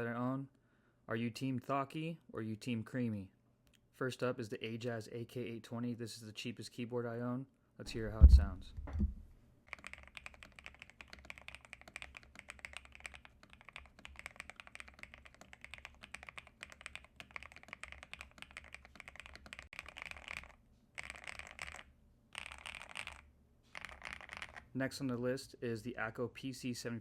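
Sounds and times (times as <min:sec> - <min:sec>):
mechanical keyboard typing: 0:09.7 - 0:24.6.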